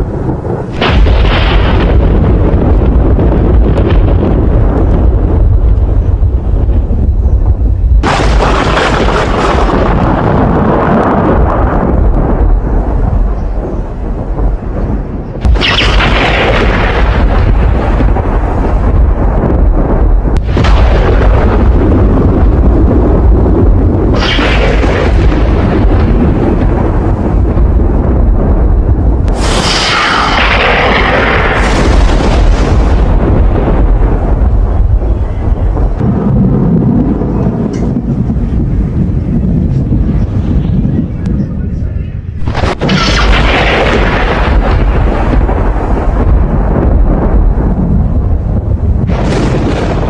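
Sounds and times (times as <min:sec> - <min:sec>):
thunder rumble: 0:00.0 - 0:50.0
harsh hiss surges: 0:29.3 - 0:32.1.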